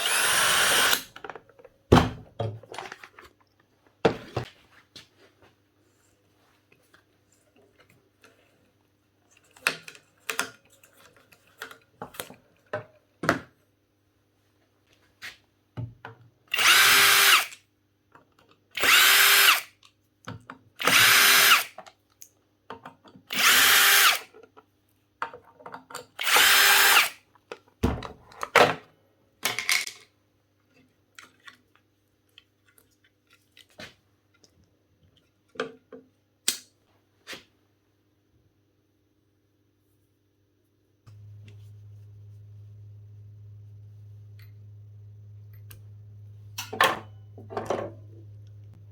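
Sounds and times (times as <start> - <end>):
small power tool motor: 0.0 - 1.1, 16.5 - 17.6, 18.8 - 19.7, 20.8 - 21.7, 23.3 - 24.2, 26.2 - 27.2.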